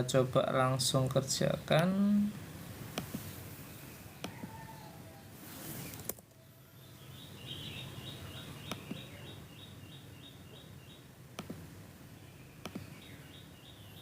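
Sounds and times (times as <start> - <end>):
bird chirping: 5.8 - 11.2, 12.0 - 14.0
sharp clicks: 12.6 - 12.9.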